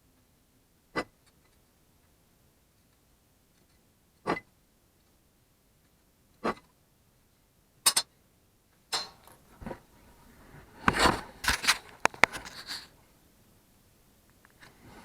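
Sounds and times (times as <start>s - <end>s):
hard objects clicking and knocking: 10.8s - 12.9s.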